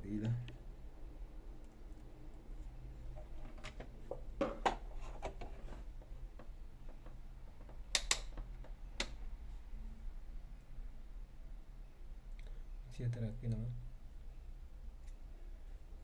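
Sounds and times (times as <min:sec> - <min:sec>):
low steady hum: 0:00.0 - 0:16.0
tools clicking on workbench: 0:03.2 - 0:09.2.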